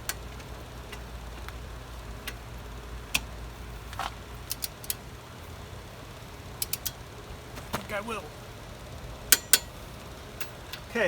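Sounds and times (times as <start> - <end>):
torque wrench clicks: 4.4 - 5.0, 6.6 - 7.0.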